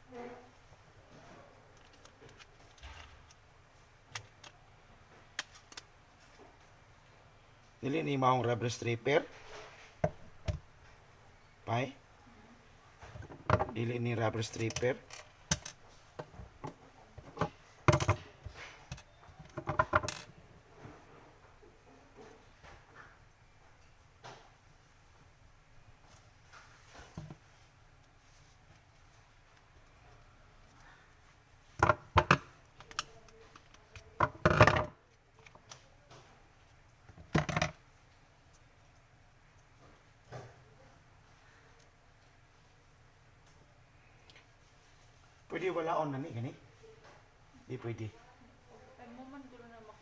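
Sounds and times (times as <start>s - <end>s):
plastic and metal parts clinking: 1.7s - 3.4s, 13.2s - 15.9s
mop parts clacking and rattling: 33.6s - 35.0s.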